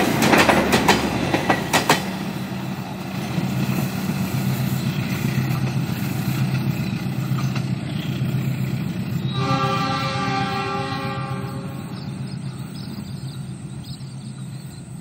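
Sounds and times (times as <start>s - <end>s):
diesel train engine drone: 0.0s - 15.0s
train horn: 9.2s - 12.2s.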